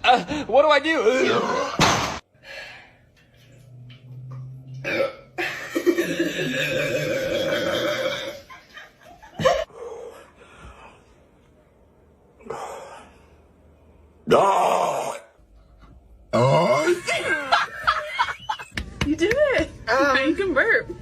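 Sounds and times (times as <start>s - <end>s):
person burping: 4.8s - 8.5s, 16.3s - 17.3s.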